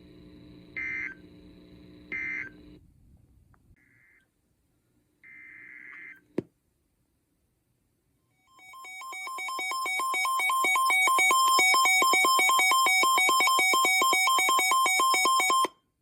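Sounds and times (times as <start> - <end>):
two-pitch electronic alert tone: 8.5 - 15.7.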